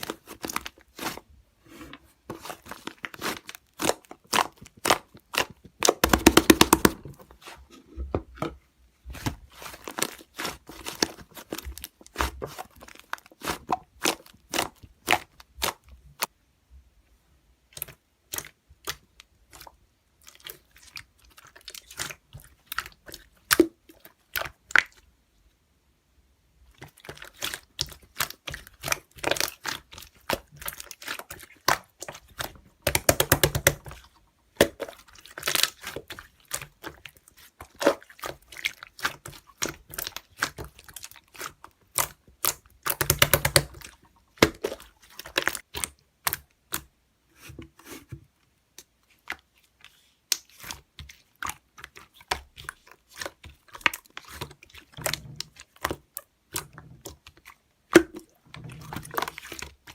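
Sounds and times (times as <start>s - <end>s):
slime squeezed by hand popping: 5.9s - 7.1s.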